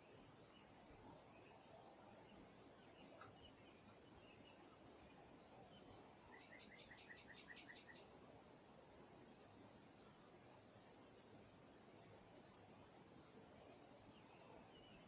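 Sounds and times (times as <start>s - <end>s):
faint bird chirps: 0.0s - 8.2s.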